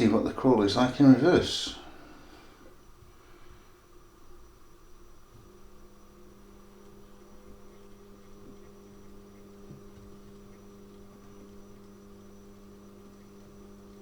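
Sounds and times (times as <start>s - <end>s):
small electric motor humming: 4.4s - 14.0s.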